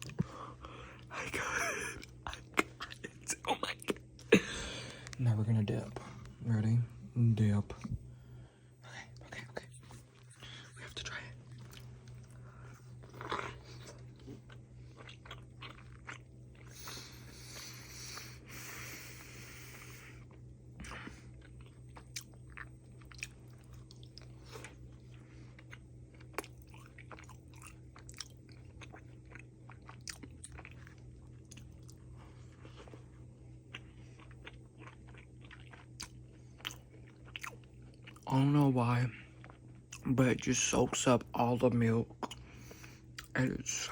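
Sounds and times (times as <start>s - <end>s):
person chewing wet food: 0.0s - 5.2s, 11.4s - 38.6s, 39.2s - 40.1s, 42.1s - 43.8s
low hum: 0.0s - 43.9s.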